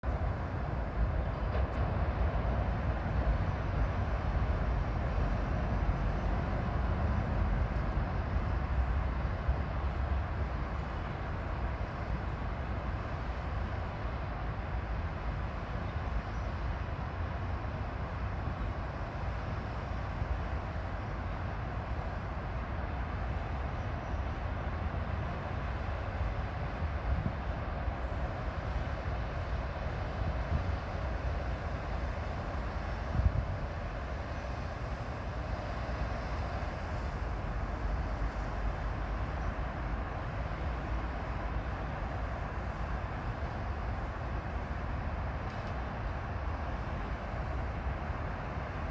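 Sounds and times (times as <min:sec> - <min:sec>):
distant traffic rumble: 0:00.0 - 0:48.9.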